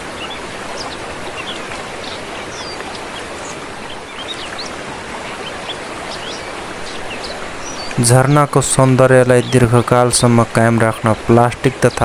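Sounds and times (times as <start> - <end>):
birds chirping: 0.0 - 2.8, 6.1 - 12.0
small waterfall rushing: 0.0 - 12.0.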